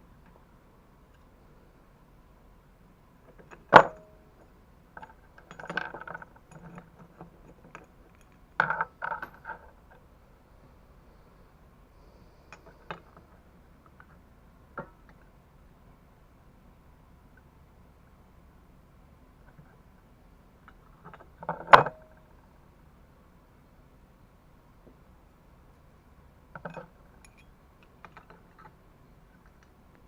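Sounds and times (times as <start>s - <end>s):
metal tools clinking: 26.6s - 27.5s.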